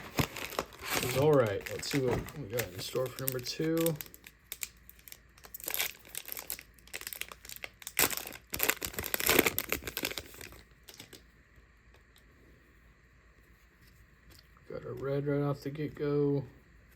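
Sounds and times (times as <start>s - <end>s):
plastic wrapping crinkling and tearing: 0.0s - 11.2s.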